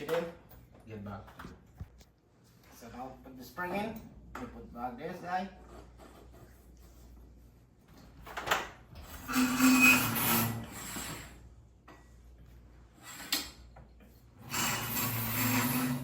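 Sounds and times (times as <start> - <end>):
metal scraping and rubbing: 9.0 - 11.4, 14.4 - 16.0.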